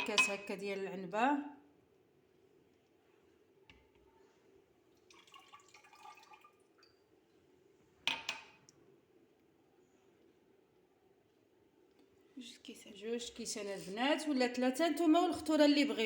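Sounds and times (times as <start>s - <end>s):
thick liquid pouring: 4.8s - 7.5s.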